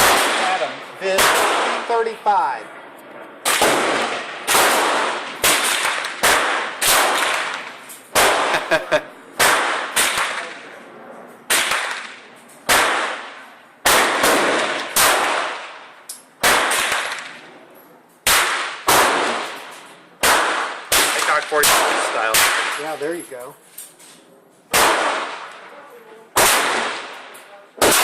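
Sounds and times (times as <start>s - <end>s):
pistol shots echoing: 0.0s - 2.0s, 3.4s - 8.8s, 9.4s - 10.7s, 11.5s - 17.4s, 18.2s - 23.0s, 24.7s - 25.7s, 26.4s - 28.0s.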